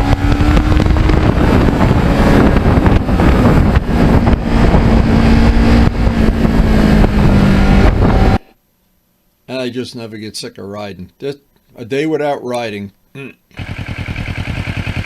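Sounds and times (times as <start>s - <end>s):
motorcycle engine running: 0.0s - 8.4s, 13.6s - 15.0s
wind noise on microphone: 0.0s - 8.5s.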